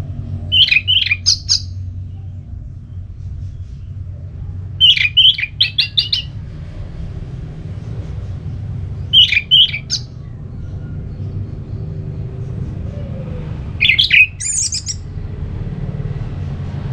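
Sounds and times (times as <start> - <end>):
low hum: 0.0 - 16.9
thrush singing: 0.5 - 1.7, 4.8 - 6.4, 9.1 - 10.1, 13.6 - 15.0.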